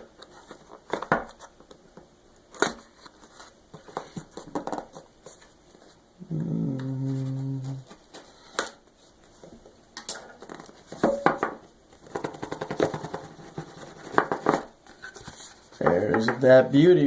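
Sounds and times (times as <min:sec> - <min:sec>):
low steady hum: 0:00.0 - 0:12.2.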